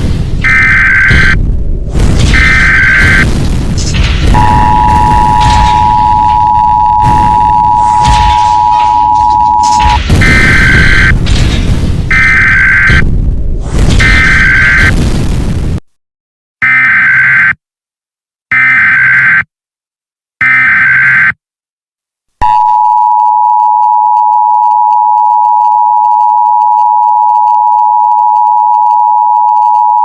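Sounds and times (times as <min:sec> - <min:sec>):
digital data tone bursts: 0:00.4 - 0:01.4, 0:02.2 - 0:11.2, 0:12.1 - 0:13.0
two-tone attention signal: 0:04.4 - 0:11.1.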